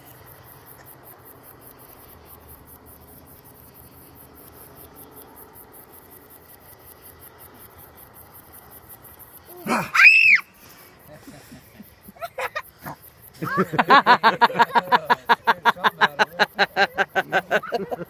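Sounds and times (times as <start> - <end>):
insects chirping: 0.0 - 18.0
person hiccupping: 9.5 - 10.0.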